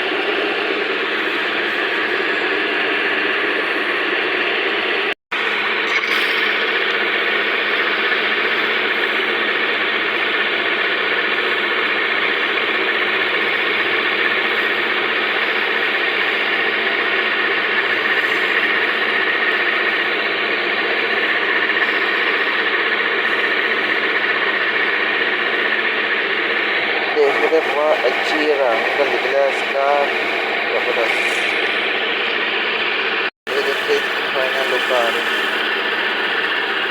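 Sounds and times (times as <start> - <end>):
workshop machine whirring: 12.3 - 36.9.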